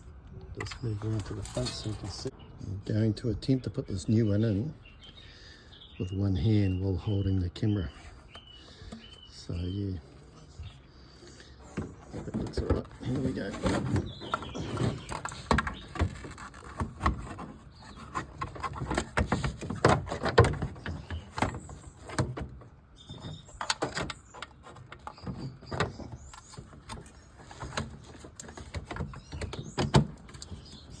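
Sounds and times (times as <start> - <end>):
plastic scraping and knocking: 11.4 - 31.0.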